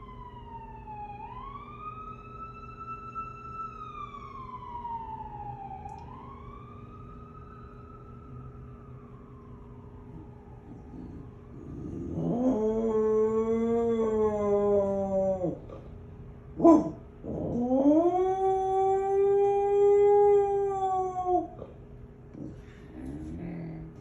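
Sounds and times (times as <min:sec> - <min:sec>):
dog howling: 0:10.0 - 0:15.8, 0:16.6 - 0:21.8.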